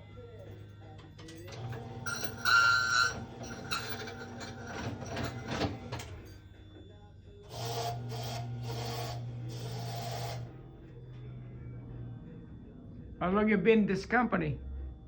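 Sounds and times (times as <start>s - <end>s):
cutter grinding a key: 0.8s - 10.5s
machine motor humming: 1.6s - 6.7s, 7.5s - 10.7s.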